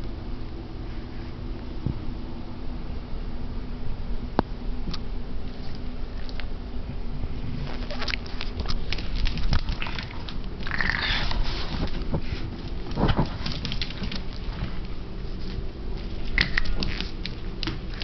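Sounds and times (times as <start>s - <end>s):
steady low hum: 0.0s - 18.0s
puppy tussling with toy: 7.7s - 18.0s.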